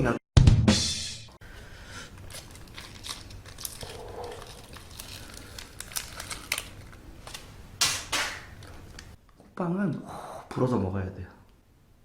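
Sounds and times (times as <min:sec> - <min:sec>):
packaging crinkling and rustling: 0:02.0 - 0:09.2.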